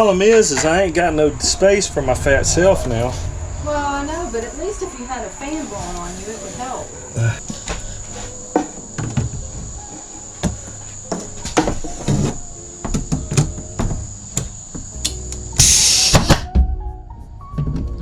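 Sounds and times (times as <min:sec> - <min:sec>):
low hum: 0:00.8 - 0:07.4
high-pitched insect drone: 0:01.1 - 0:16.3.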